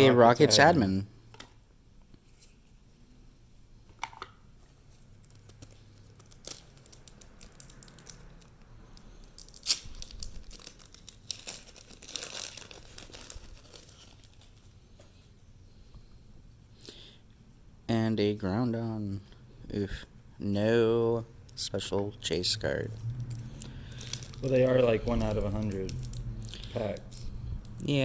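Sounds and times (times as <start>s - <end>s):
foil wrapper crinkling and tearing: 5.2s - 14.8s, 23.3s - 27.8s.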